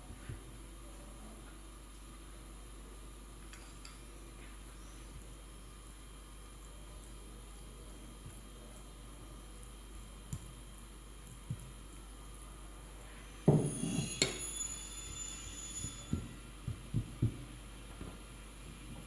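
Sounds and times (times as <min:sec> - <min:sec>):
sharp ringing clink: 0:13.5 - 0:16.4.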